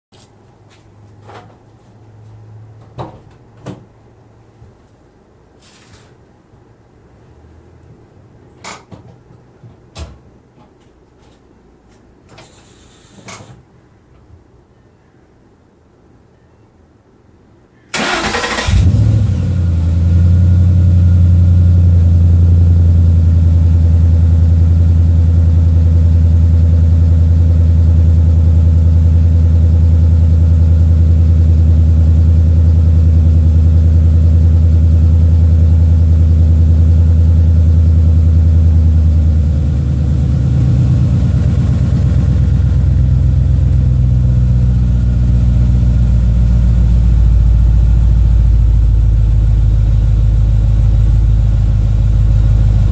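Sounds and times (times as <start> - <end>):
car engine fast-idling: 29.8 - 52.9.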